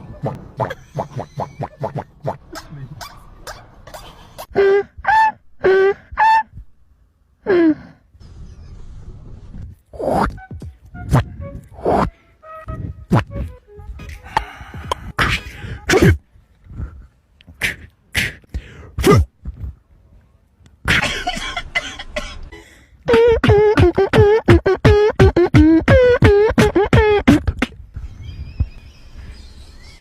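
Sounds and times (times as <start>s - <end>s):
short pitched yelps: 2.5s - 6.6s
mouth pops: 17.4s - 19.6s.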